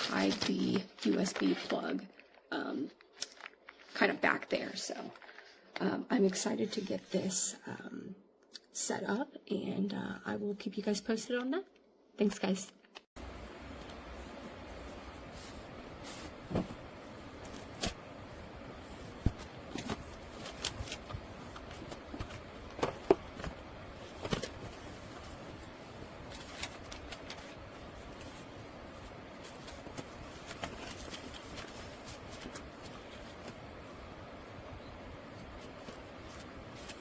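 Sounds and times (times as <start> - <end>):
steady low hiss: 13.2 - 37.0.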